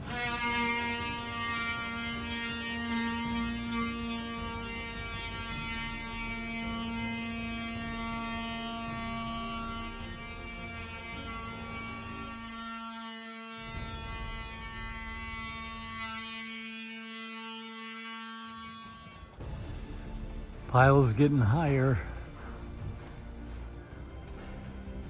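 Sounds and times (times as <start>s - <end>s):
steady machine hum: 0.0s - 12.9s.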